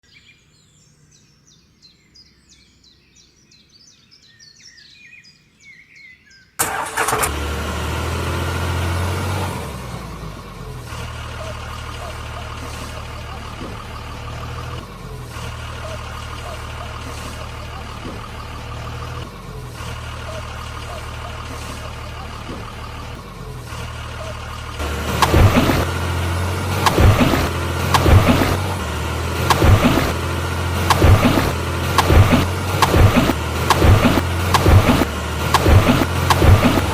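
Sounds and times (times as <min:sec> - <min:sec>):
birds chirping faintly: 0:00.0 - 0:06.6, 0:10.7 - 0:36.9
heavy vehicle engine droning: 0:06.6 - 0:36.9.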